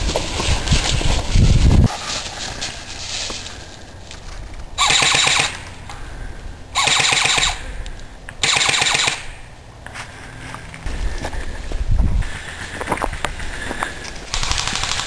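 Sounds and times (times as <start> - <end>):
airsoft gun automatic bursts: 4.8 - 5.6, 6.8 - 7.6, 8.4 - 9.3, 14.3 - 15.0.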